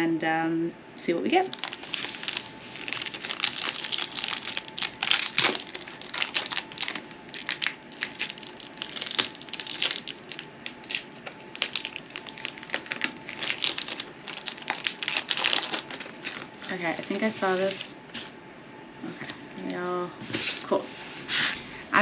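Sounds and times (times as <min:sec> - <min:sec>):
foil wrapper crinkling: 0:01.5 - 0:18.3.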